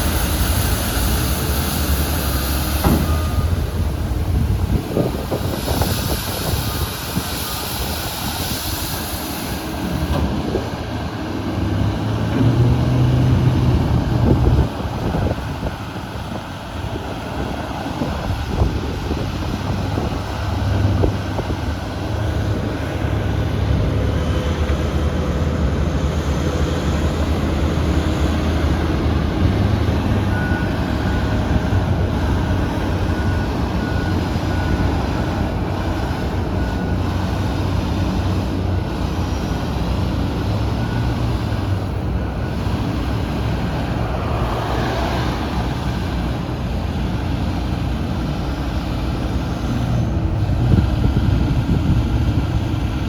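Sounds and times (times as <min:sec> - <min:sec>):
diesel engine droning under load: 0:00.0 - 0:53.0.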